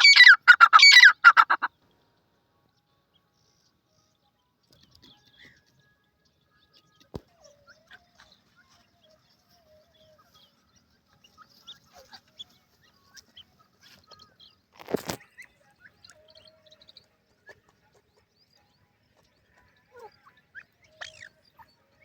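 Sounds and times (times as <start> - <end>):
loud harsh bird call: 0.0 - 1.7
birds chirping: 0.0 - 22.0.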